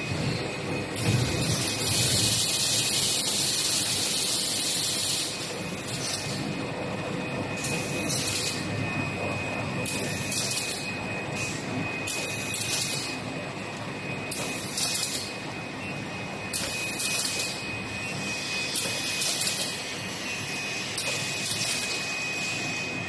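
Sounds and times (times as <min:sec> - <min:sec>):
machine drone with high whine: 0:00.0 - 0:23.0.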